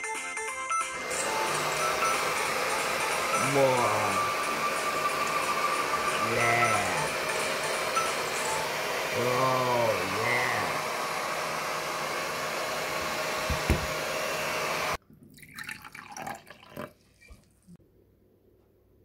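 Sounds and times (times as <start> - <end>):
hair dryer blowing: 0.9 - 15.0.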